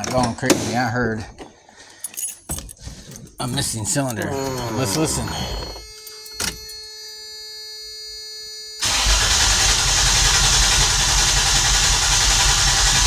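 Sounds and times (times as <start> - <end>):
starter cranking engine: 8.8 - 13.0.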